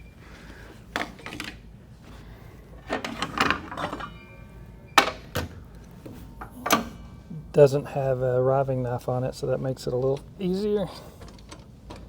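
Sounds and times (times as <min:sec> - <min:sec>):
table saw parts scraping and clattering: 0:02.8 - 0:04.2.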